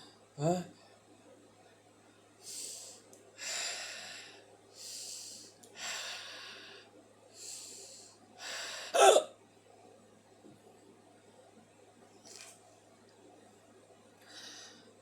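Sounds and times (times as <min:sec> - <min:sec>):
person breathing noisily: 0:02.4 - 0:09.0
loud hiccup: 0:09.0 - 0:09.3.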